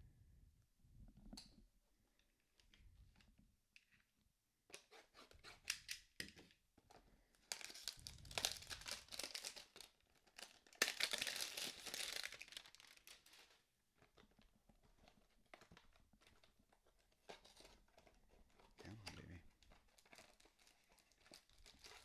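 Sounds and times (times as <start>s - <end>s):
packaging tearing and crinkling: 7.4s - 13.6s, 19.6s - 22.0s.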